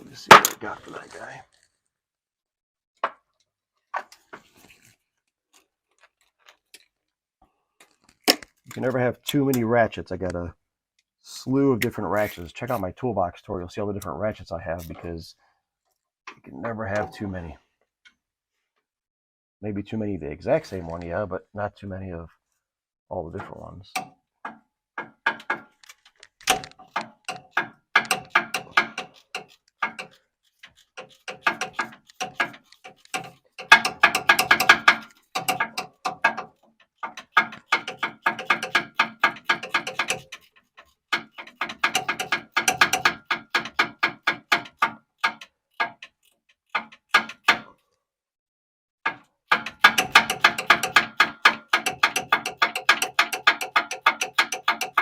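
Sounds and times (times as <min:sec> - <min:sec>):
hand ratchet clicking: 0:25.2 - 0:47.7, 0:49.1 - 0:55.0.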